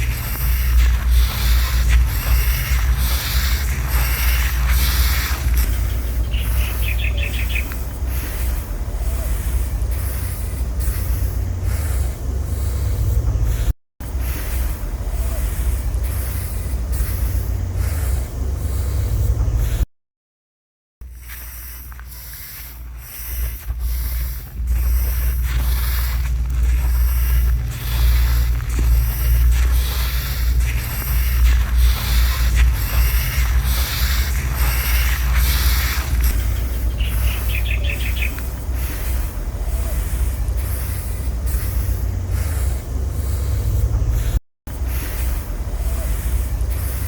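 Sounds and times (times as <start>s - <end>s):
high chirps: 0.0s - 11.2s, 21.2s - 43.9s
rice grains swishing: 0.0s - 13.0s, 21.1s - 43.6s
wind rumble on microphone: 0.0s - 19.8s, 21.1s - 47.0s.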